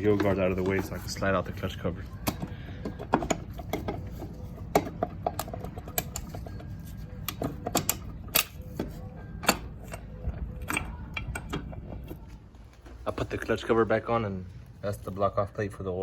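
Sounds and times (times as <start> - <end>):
metallic clicks and knocks of tools: 4.7 - 11.8.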